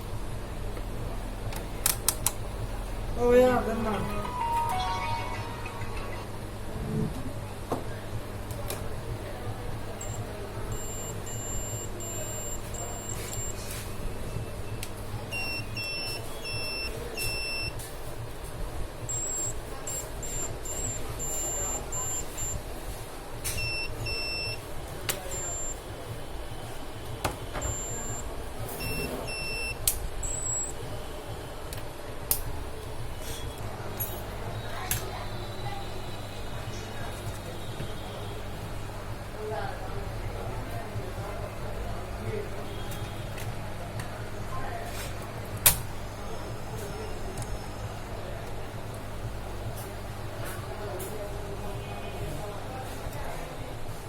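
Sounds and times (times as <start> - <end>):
short electronic beeps: 10.0 - 13.6, 14.4 - 17.8, 19.1 - 22.6, 23.6 - 24.6, 25.3 - 25.8, 27.6 - 30.8.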